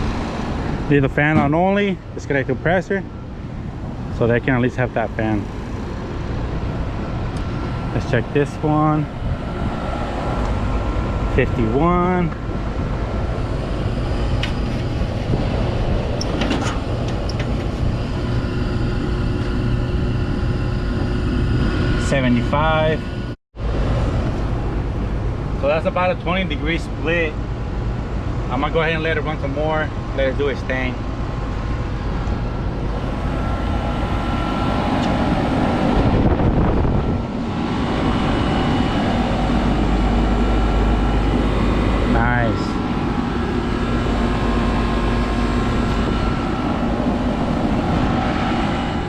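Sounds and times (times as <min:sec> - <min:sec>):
air conditioner droning: 0:00.0 - 0:49.0
extra steady hum: 0:00.0 - 0:49.0.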